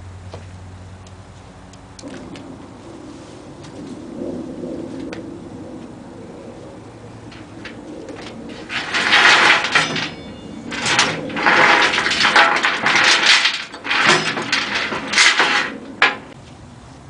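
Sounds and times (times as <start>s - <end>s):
metal chain clanking: 7.3s - 16.4s.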